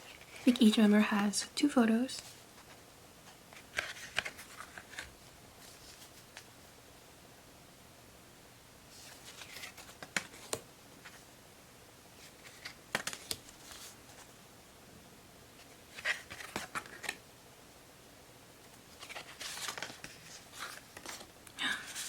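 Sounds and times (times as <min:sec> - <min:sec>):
postcards sliding and rustling: 0:02.2 - 0:06.5, 0:08.9 - 0:11.3, 0:12.2 - 0:14.4, 0:15.6 - 0:17.2, 0:18.6 - 0:22.0.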